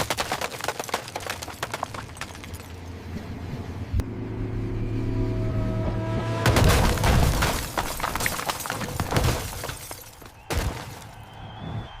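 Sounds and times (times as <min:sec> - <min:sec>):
glass and debris shattering: 0:00.0 - 0:02.9, 0:06.5 - 0:11.1
car crash impact: 0:06.4 - 0:11.1.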